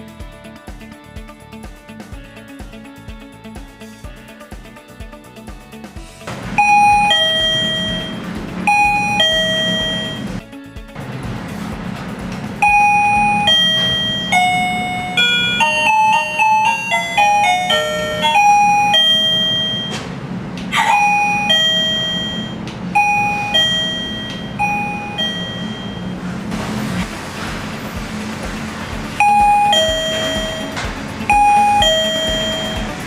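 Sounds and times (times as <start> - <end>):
doorbell chime ding-dongs: 6.5 - 10.4, 12.6 - 20.1, 20.8 - 26.2, 29.2 - 33.0
low hum: 11.0 - 33.0.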